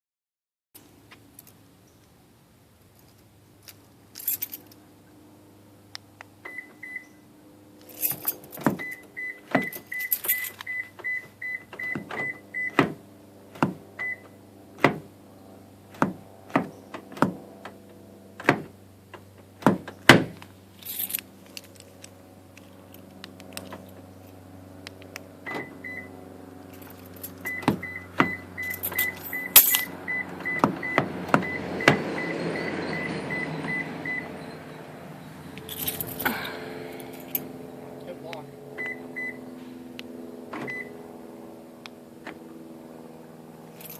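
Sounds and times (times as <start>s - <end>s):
keys jangling: 3.0s - 4.8s, 7.8s - 9.0s, 9.6s - 10.7s, 20.8s - 22.1s, 26.7s - 27.5s, 28.6s - 29.9s, 35.6s - 36.4s.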